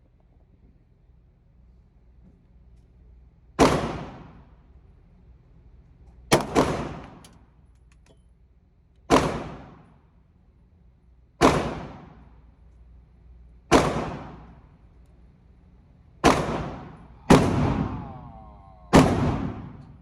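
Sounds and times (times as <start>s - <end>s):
pistol shots with ringing echo: 3.6s - 4.5s, 6.3s - 7.2s, 9.1s - 9.9s, 11.4s - 12.3s, 13.7s - 14.6s, 16.2s - 20.0s.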